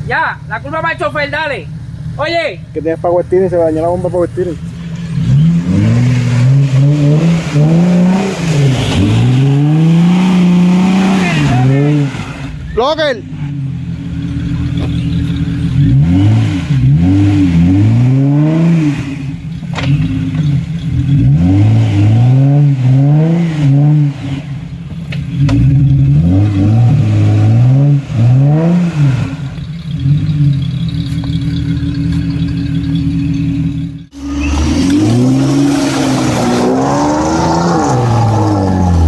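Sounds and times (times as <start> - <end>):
off-road engine revving: 0.0 - 39.0.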